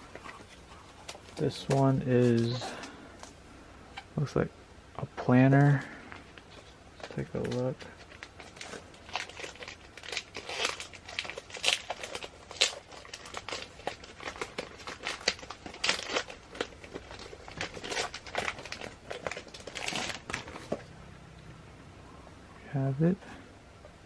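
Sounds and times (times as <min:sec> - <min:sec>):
plastic packaging crinkling: 0:06.1 - 0:21.0.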